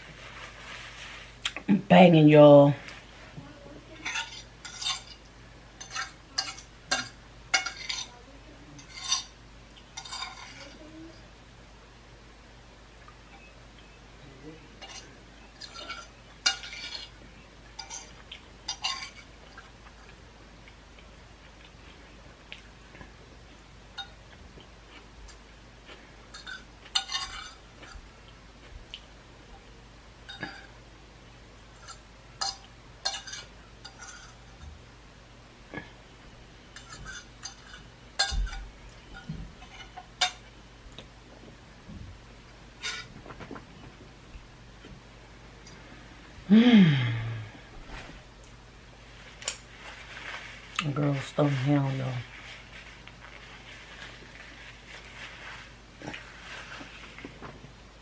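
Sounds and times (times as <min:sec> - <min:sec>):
utensil scraping and clinking on dish: 0:03.9 - 0:08.2, 0:08.8 - 0:10.9, 0:14.8 - 0:19.7, 0:24.0 - 0:24.2, 0:26.3 - 0:28.0, 0:30.2 - 0:30.8, 0:31.7 - 0:34.7, 0:36.7 - 0:40.5, 0:42.8 - 0:43.1
chewing crunchy food: 0:24.2 - 0:29.1.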